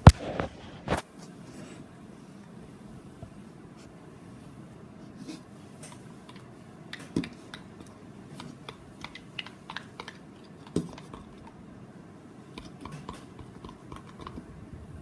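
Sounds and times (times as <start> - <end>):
utensil tapping against a bowl: 8.4 - 11.6, 12.5 - 14.5.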